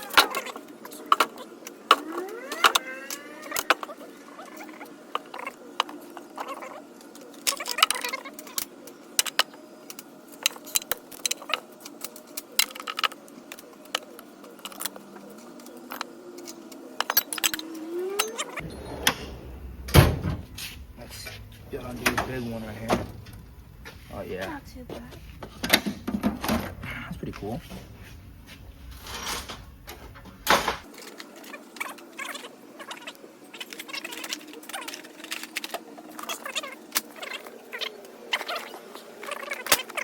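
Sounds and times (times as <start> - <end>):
brief rising squeaks: 18.0 - 19.8.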